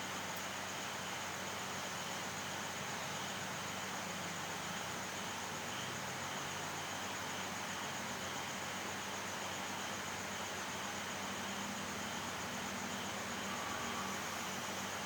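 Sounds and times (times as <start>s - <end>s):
steady hiss: 0.0s - 15.0s
faint low hum: 11.0s - 15.0s.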